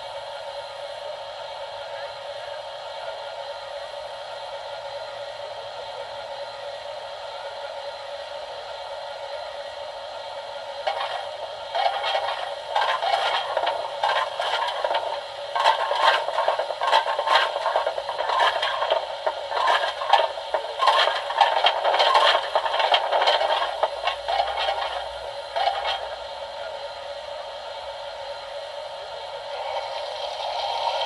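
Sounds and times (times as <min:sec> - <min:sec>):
model locomotive steam hiss: 0:00.0 - 0:31.0
rattling and clattering: 0:10.9 - 0:26.2.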